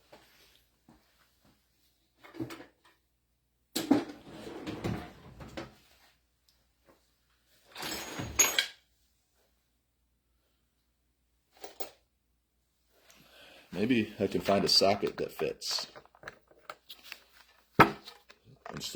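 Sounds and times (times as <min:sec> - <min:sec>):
metal tools clattering: 0:07.8 - 0:08.8, 0:14.2 - 0:18.9.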